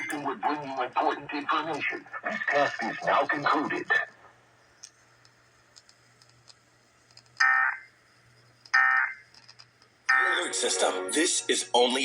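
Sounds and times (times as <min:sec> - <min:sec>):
shrill digital data tones: 0:10.1 - 0:12.0.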